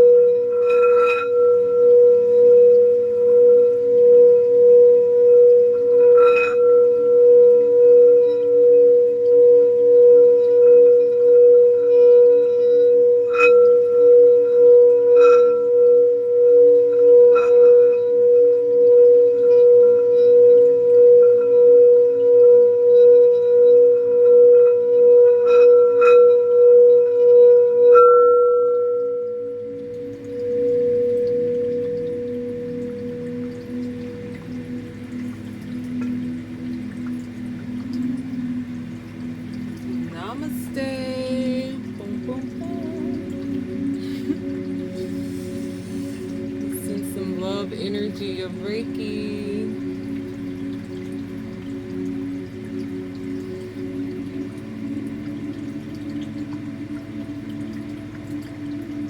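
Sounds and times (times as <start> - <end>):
singing bowl humming: 0.0 - 59.0.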